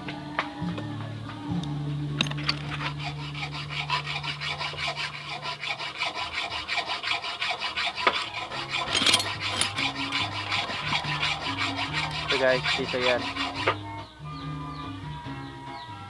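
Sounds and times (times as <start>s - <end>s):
hand tool rasping: 2.2s - 14.1s.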